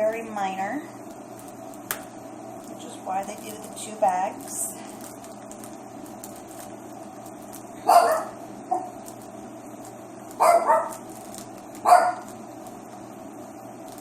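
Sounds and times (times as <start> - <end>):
dog barking: 7.8 - 8.9, 10.4 - 11.0, 11.8 - 12.3.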